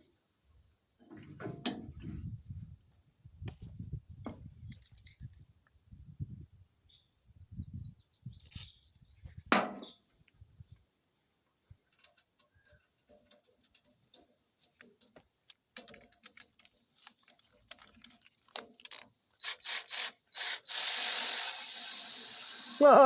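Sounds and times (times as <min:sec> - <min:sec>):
power tool motor whining: 0:19.4 - 0:23.0.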